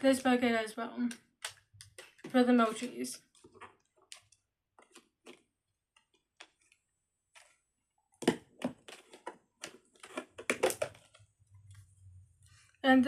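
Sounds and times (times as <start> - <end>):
plastic toys clicking and knocking: 1.1 - 2.8, 8.2 - 11.3.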